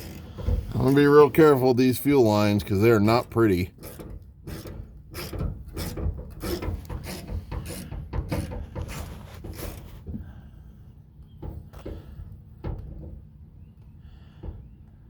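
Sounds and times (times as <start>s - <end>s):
hand tool clicking and scraping metal: 0.0s - 0.4s, 3.7s - 9.9s.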